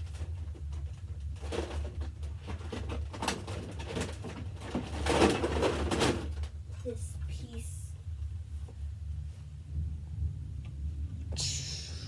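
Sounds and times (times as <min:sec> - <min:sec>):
steady low hum: 0:06.6 - 0:12.0.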